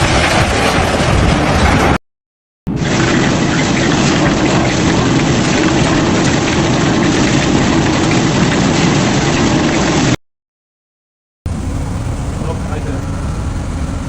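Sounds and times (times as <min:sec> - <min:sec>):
machinery humming: 0:11.5 - 0:14.0.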